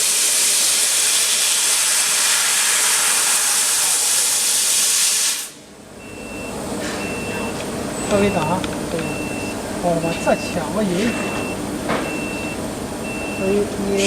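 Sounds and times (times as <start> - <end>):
laser cutter gas jet hissing: 0.0 - 5.6.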